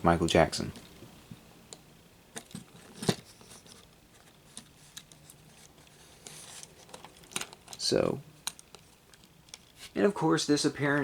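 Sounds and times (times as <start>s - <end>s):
plastic parts clicking: 6.2s - 9.8s.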